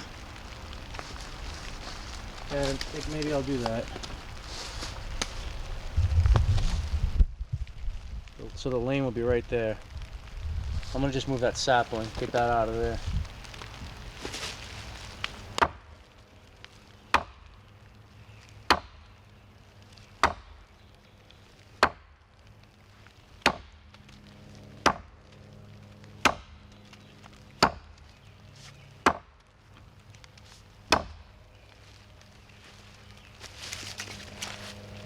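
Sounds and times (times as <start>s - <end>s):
axe chopping wood: 17.1s - 17.4s, 18.7s - 19.0s, 20.2s - 20.6s, 21.8s - 22.1s, 23.4s - 23.8s, 24.8s - 25.1s, 26.2s - 26.6s, 27.6s - 27.9s, 29.0s - 29.3s, 30.9s - 31.2s.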